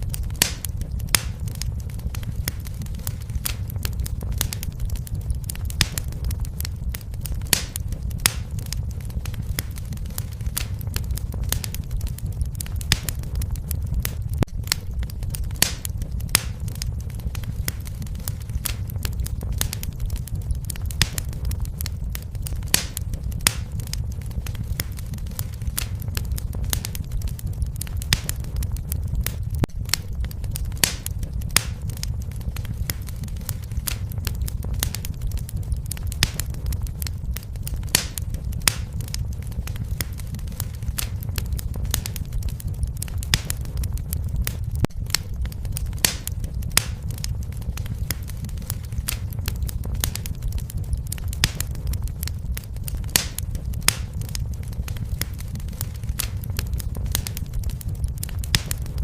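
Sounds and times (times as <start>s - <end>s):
fire crackles and pops: 0.0s - 59.0s
wood fire rumbling: 0.0s - 59.0s.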